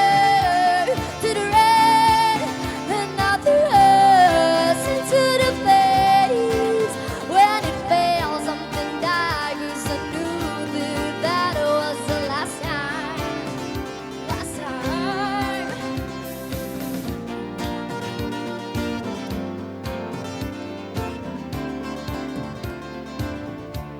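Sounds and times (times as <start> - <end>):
girl singing wordless notes: 0.0 - 16.8
instrumental backing: 0.0 - 23.9.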